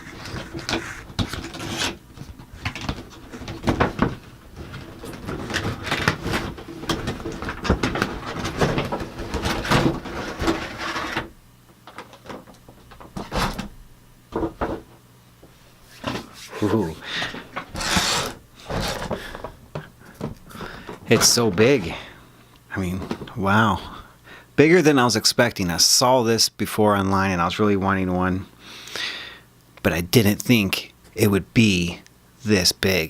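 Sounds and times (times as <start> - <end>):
packaging rustling and scraping: 0.0 - 13.7, 15.8 - 22.0
cardboard box being cut open: 17.7 - 19.1.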